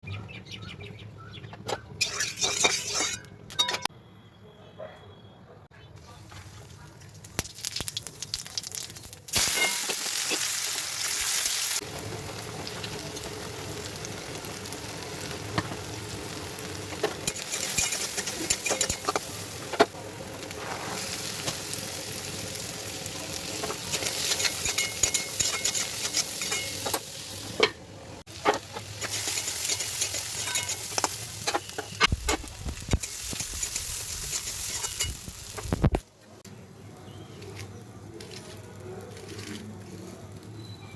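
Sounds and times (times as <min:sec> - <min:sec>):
spoon scraping a pan: 0:01.7 - 0:03.9, 0:17.0 - 0:19.9, 0:23.6 - 0:35.9
food sizzling in hot oil: 0:07.2 - 0:36.0.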